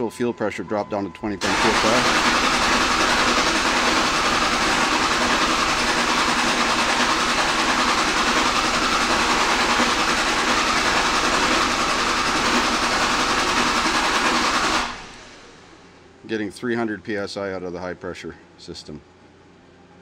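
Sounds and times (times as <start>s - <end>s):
diesel engine cranking: 1.4s - 15.4s.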